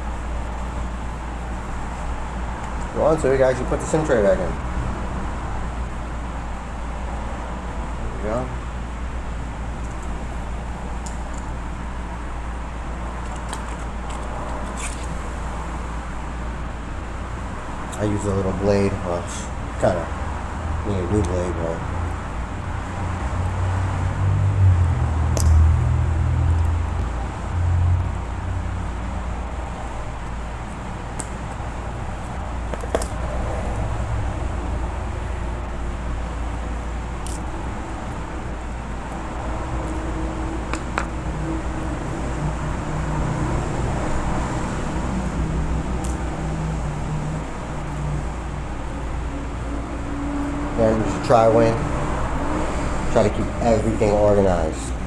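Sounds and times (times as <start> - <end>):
workshop hum and hiss: 0.0 - 55.0
small sharp clicks: 25.4 - 25.6.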